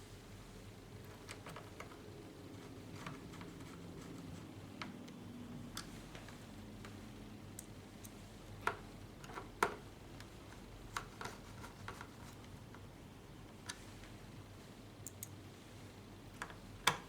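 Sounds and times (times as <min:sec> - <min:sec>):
faint steady hum: 0:00.0 - 0:17.0
small clicks and taps of tools: 0:04.8 - 0:12.9, 0:16.4 - 0:17.0.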